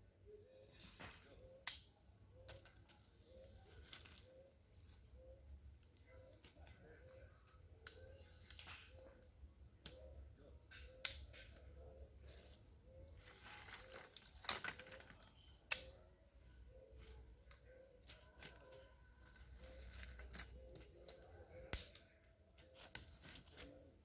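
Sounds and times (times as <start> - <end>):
twigs snapping: 0.7 - 3.0, 3.6 - 7.2, 7.8 - 11.8, 13.2 - 16.0, 17.0 - 23.8
dry leaves rustling and crackling: 2.5 - 6.8, 12.3 - 15.4, 17.0 - 23.8.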